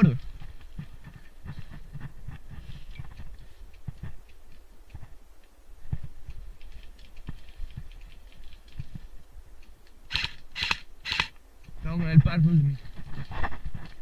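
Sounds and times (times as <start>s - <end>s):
light ticks and clicks: 3.0s - 10.0s.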